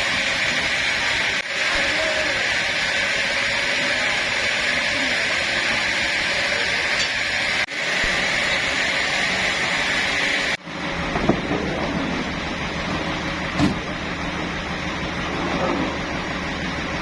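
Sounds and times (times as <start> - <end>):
low machine sound: 0.0 - 17.0
sawmill machinery hiss and hum: 0.0 - 17.0.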